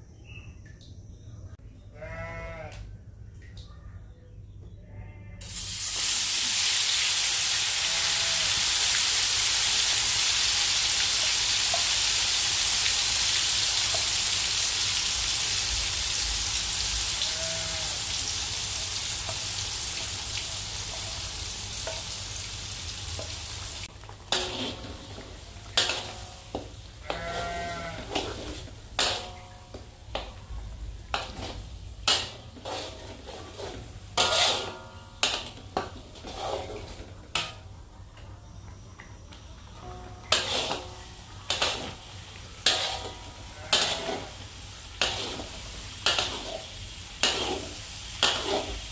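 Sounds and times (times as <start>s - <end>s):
faint livestock bleating: 1.9s - 2.9s, 4.8s - 5.5s, 7.8s - 8.6s, 17.2s - 18.2s, 27.0s - 28.4s, 43.0s - 44.4s
food sizzling in hot oil: 5.4s - 37.5s, 40.2s - 48.9s
utensil scraping a pan: 24.3s - 30.4s, 31.1s - 37.6s, 40.2s - 48.9s.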